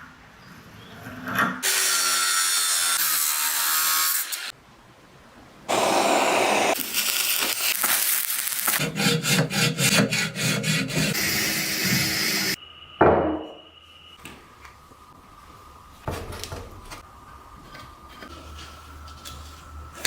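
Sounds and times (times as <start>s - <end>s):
abrasive rasping on metal parts: 8.8s - 12.6s.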